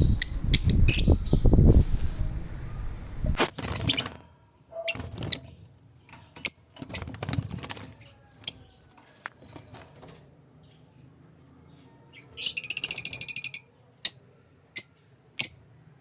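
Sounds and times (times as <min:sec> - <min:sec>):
bird chirps: 0:11.7 - 0:15.7.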